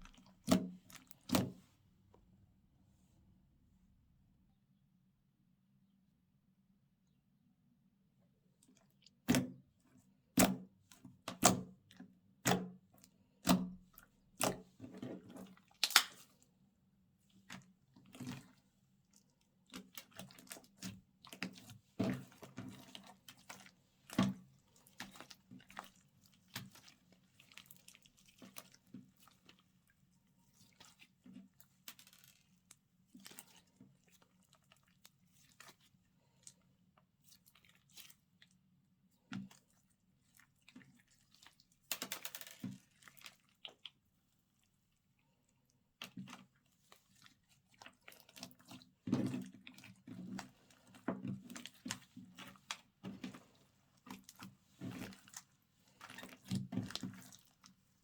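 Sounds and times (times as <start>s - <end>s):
slime popping and squishing: 15.8s - 16.2s.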